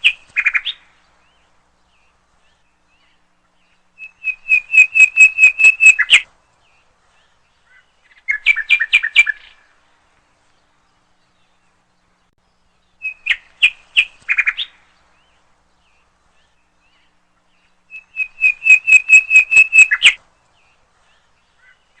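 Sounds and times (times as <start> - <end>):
nightingale singing: 0.0 - 22.0.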